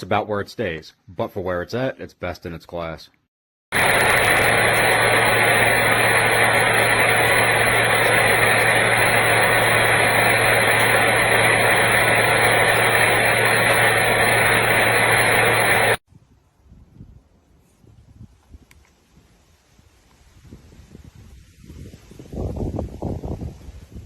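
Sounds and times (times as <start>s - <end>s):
mini chainsaw running: 3.8s - 16.0s.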